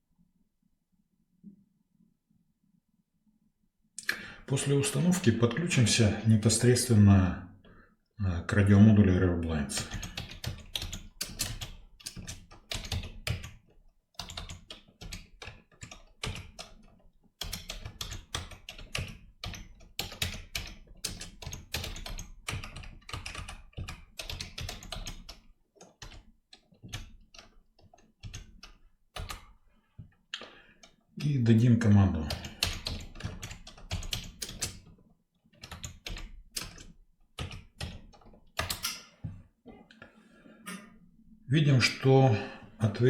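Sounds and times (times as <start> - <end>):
typing on a computer keyboard: 9.7 - 29.6, 32.3 - 38.9.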